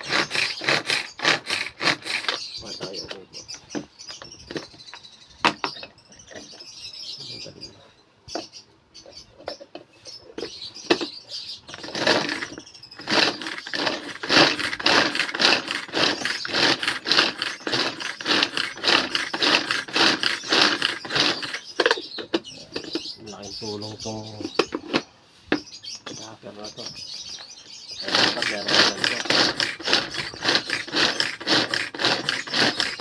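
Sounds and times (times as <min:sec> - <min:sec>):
vegetable chopper chopping carrots: 0:00.0 - 0:02.4, 0:11.8 - 0:22.0, 0:28.0 - 0:33.0.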